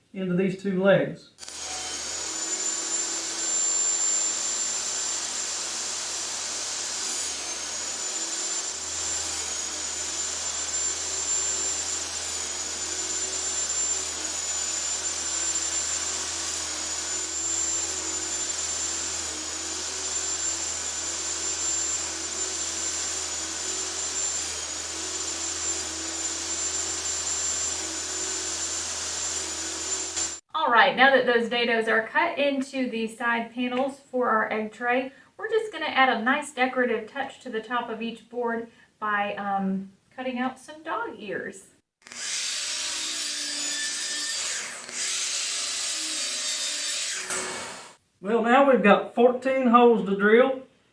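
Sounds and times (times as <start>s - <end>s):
power tool whining while cutting wood: 1.4s - 30.5s, 42.0s - 48.0s.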